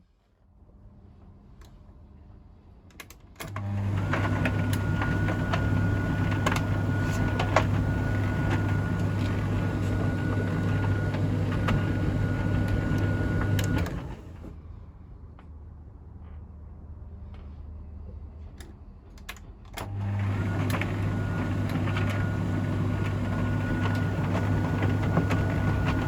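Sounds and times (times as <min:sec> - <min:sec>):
tumble dryer motor humming: 0:03.4 - 0:14.5, 0:19.8 - 0:26.0.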